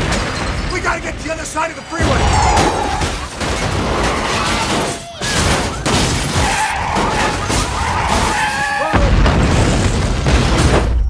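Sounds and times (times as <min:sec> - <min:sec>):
car tyres squealing and skidding: 0:02.0 - 0:09.0.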